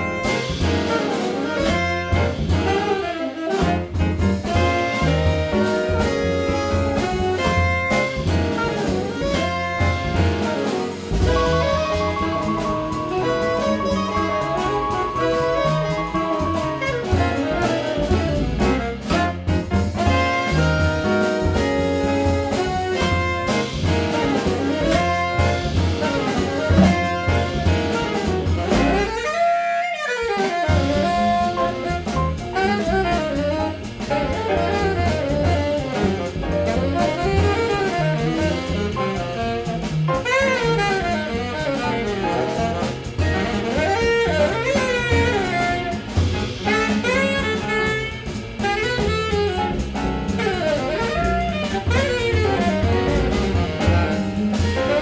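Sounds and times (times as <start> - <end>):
double bass: 0.0 - 29.5, 30.5 - 55.0
drum kit: 0.0 - 55.0
piano: 0.0 - 55.0
saxophone: 0.0 - 55.0.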